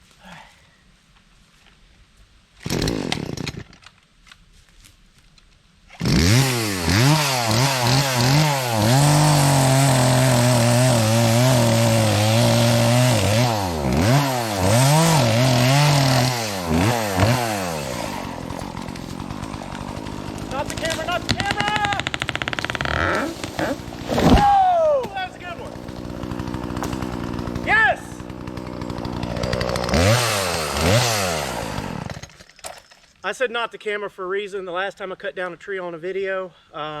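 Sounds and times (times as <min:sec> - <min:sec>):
chainsaw revving: 0:02.6 - 0:03.8, 0:06.0 - 0:32.5.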